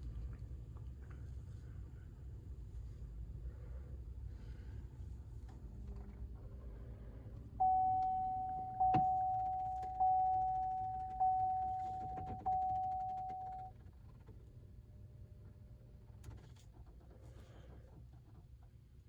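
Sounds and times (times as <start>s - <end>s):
truck warning chime: 7.6s - 13.7s.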